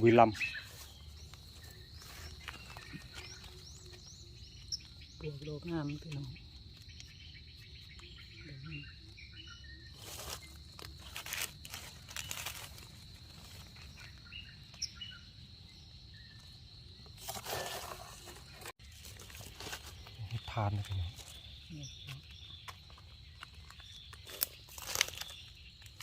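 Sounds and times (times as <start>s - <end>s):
leaves and brush rustling: 0.0s - 8.4s, 9.1s - 26.0s
bird chirps: 0.0s - 11.1s, 13.4s - 16.6s
high insect drone: 0.0s - 26.0s.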